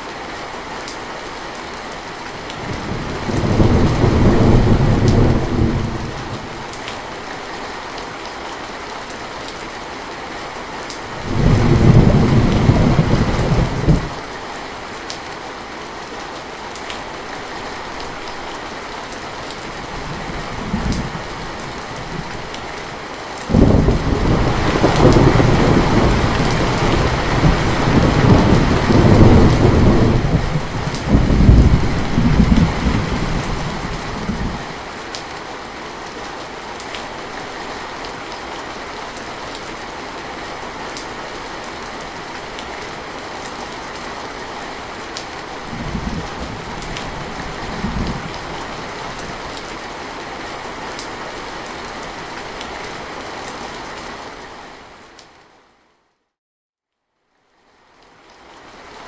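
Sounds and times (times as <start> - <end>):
steady rain: 0.0 - 56.2, 57.2 - 59.0
rumbling thunder: 2.6 - 6.5, 11.2 - 14.2, 23.5 - 34.7, 45.7 - 49.4.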